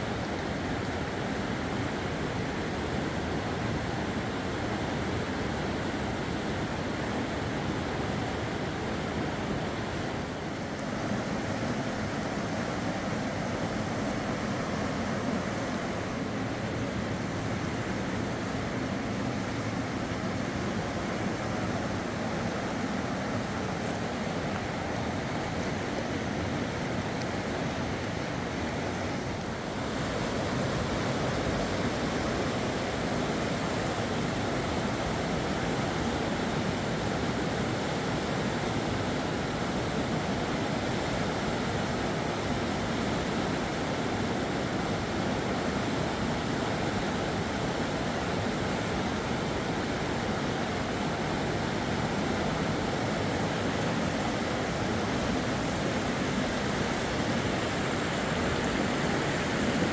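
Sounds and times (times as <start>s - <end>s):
fast river water rushing: 0.0s - 59.9s.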